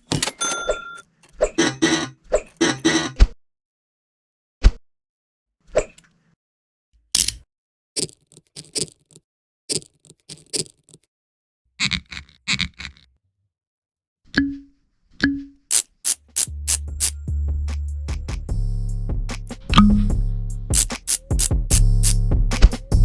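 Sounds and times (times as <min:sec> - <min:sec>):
quick scraping taps: 0:08.0 - 0:11.1, 0:20.7 - 0:22.9.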